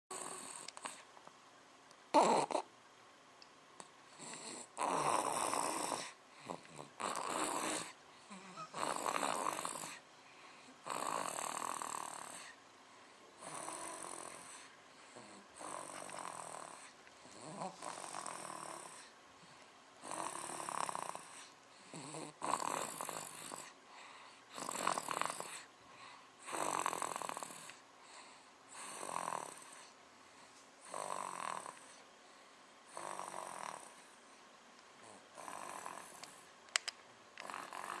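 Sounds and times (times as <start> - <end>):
baby snoring: 0.1 - 1.1, 2.1 - 2.7, 4.1 - 10.0, 10.8 - 12.6, 13.4 - 19.1, 20.0 - 25.7, 26.4 - 30.0, 30.8 - 32.0, 32.9 - 34.1, 35.0 - 36.4, 37.4 - 38.0.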